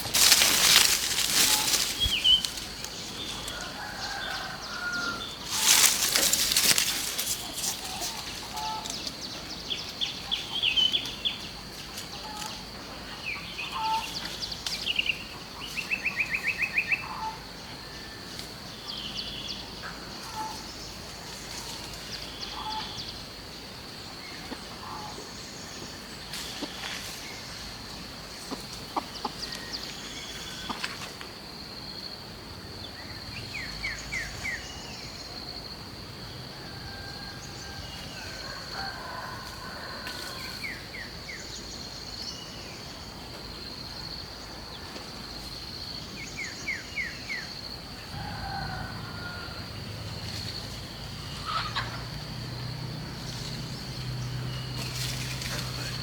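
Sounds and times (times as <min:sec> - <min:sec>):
wings flapping: 0:00.0 - 0:03.6
chickens clucking: 0:00.0 - 0:09.5, 0:26.3 - 0:31.2, 0:50.2 - 0:53.6
high insect drone: 0:00.0 - 0:56.0.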